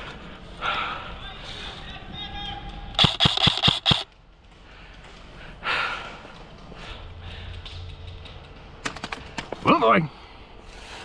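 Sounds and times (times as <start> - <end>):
airsoft rifle shots: 3.0 - 4.1, 8.8 - 9.6.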